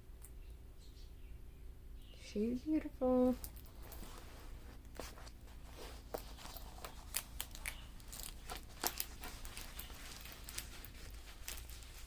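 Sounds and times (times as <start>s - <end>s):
plastic packaging crinkling: 3.3s - 12.0s.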